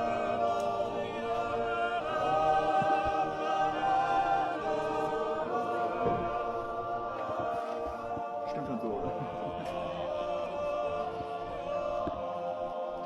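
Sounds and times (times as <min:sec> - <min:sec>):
choir singing held chords: 0:00.0 - 0:13.0.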